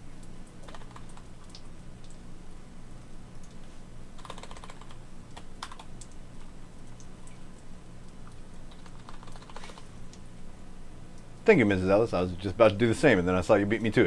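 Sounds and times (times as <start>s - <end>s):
low steady hum: 0.0s - 14.0s
typing on a computer keyboard: 0.6s - 2.2s, 4.2s - 6.2s, 8.7s - 9.9s.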